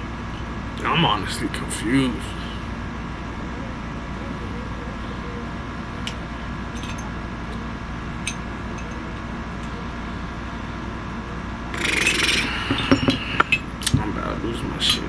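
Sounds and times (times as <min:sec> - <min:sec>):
background hum: 0:00.0 - 0:15.0
small parts clicking and clinking: 0:06.0 - 0:07.1, 0:08.2 - 0:09.0.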